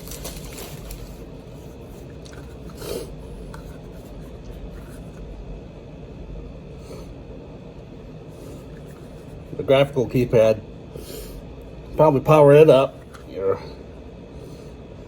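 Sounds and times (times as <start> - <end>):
keypad and wrapping handling noises: 0.0 - 2.8.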